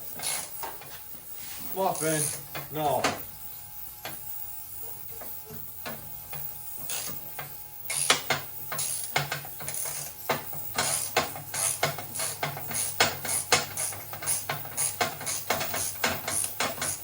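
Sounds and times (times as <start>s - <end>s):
ratchet wrench clicking: 0.1s - 0.7s, 6.3s - 17.0s.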